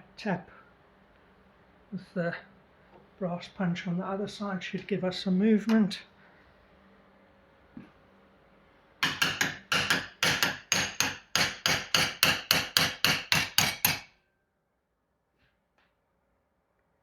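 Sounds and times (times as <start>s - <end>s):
hammer tapping metal punch: 9.0s - 14.1s.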